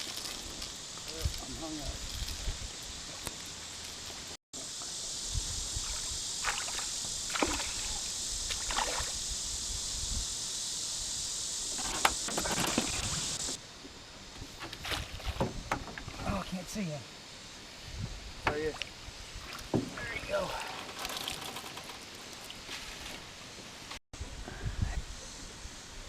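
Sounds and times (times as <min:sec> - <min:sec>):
small water splashes: 0:05.8 - 0:09.2.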